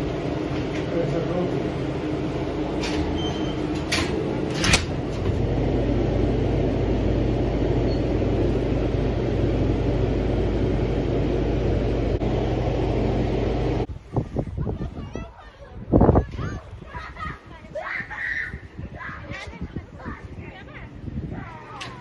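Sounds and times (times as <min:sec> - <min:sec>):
vehicle engine humming: 0:00.0 - 0:13.9.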